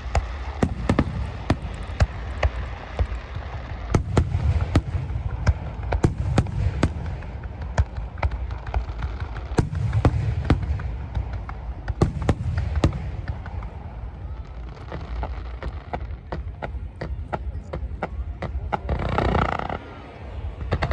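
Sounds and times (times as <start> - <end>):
fireworks bangs and cracks: 0.0 - 20.9.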